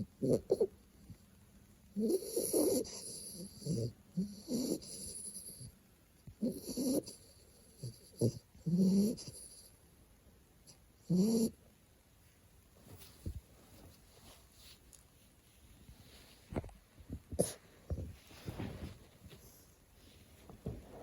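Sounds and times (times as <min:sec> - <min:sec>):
puppy snoring: 0:00.0 - 0:00.8, 0:01.9 - 0:05.8, 0:06.4 - 0:09.8, 0:10.7 - 0:11.6, 0:17.2 - 0:18.6.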